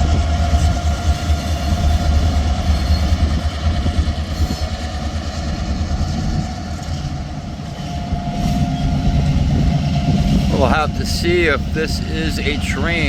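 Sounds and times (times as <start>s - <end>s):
diesel locomotives rumbling: 0.0s - 13.0s.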